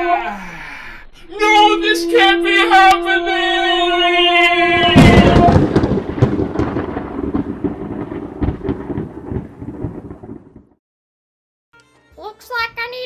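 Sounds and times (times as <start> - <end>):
long held cry: 0.0 - 5.6
thunder crack and rumble: 4.6 - 10.8.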